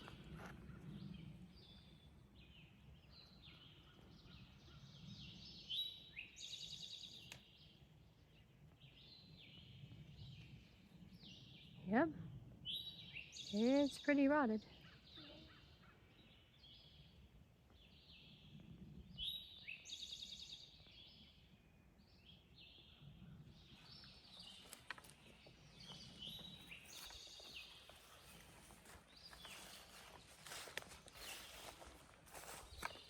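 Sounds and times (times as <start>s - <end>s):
songbirds trilling: 22.1s - 33.0s
footsteps on forest floor: 23.9s - 33.0s.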